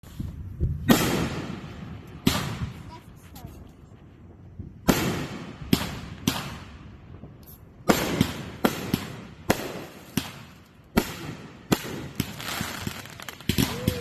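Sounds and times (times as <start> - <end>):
fireworks bangs: 0.6 - 3.3, 4.8 - 14.0.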